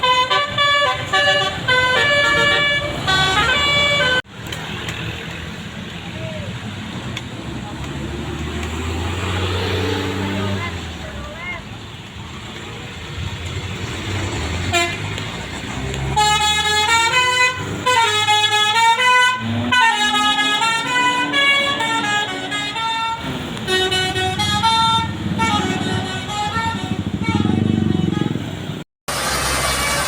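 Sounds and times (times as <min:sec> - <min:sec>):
musical bus air horn: 0:00.0 - 0:04.3, 0:14.6 - 0:15.2, 0:16.0 - 0:28.6
bus engine running: 0:00.0 - 0:30.0.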